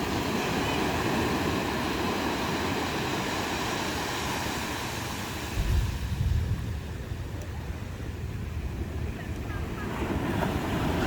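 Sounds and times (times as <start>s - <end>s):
ocean waves breaking on beach: 0.0s - 11.0s.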